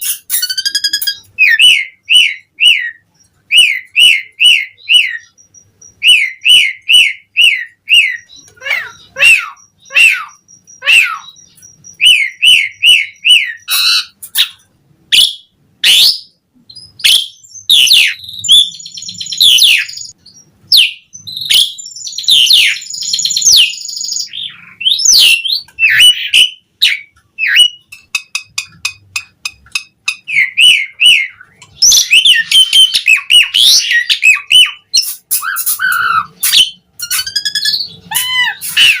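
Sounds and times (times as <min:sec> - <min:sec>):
bird singing whistled notes: 0:00.0 - 0:14.6, 0:15.2 - 0:27.9, 0:30.3 - 0:39.0
bird chatter: 0:17.0 - 0:39.0.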